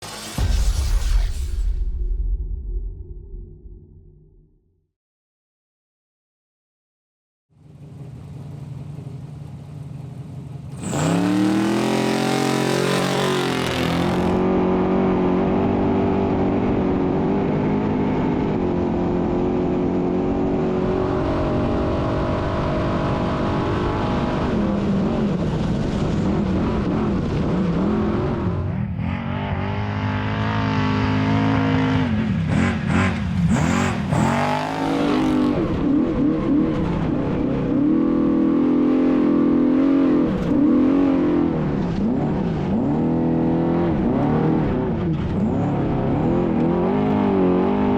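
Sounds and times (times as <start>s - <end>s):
truck engine revving: 10.7s - 18.0s, 26.9s - 47.9s.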